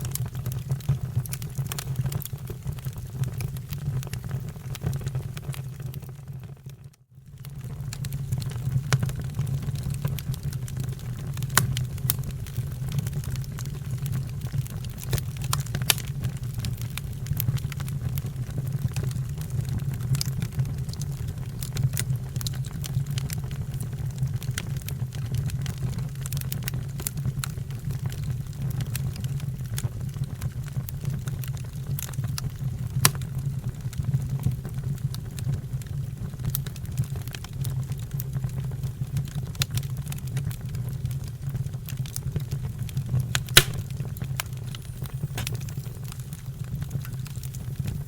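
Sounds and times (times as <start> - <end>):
wood fire crackling: 0.0 - 48.0
sharp fire pops: 11.3 - 12.6, 14.9 - 16.9, 33.0 - 33.3, 43.3 - 48.0.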